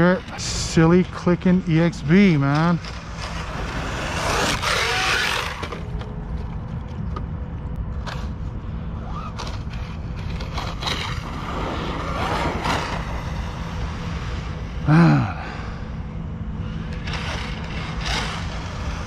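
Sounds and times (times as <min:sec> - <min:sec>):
tyres and drivetrain noise: 0:00.0 - 0:19.0
electric motor whine: 0:02.1 - 0:06.5, 0:08.0 - 0:14.9, 0:15.5 - 0:19.0.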